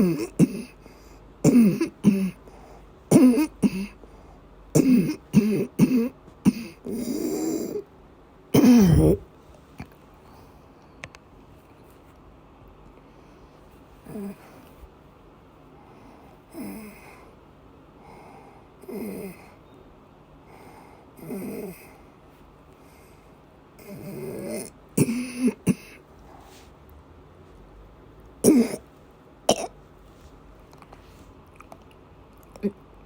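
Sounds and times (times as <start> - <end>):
sharp coughs: 0.0 - 0.8, 1.4 - 2.4, 3.1 - 4.0, 4.8 - 6.8, 8.6 - 9.2, 25.0 - 26.0, 28.4 - 28.8
noisy wheezing breaths: 0.0 - 1.4, 2.1 - 4.6, 15.7 - 19.6, 20.4 - 26.8.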